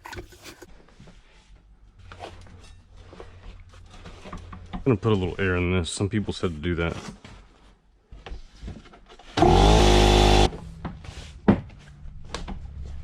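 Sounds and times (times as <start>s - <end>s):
air inflator hissing: 9.4s - 10.5s
inflator motor hum: 9.4s - 10.6s.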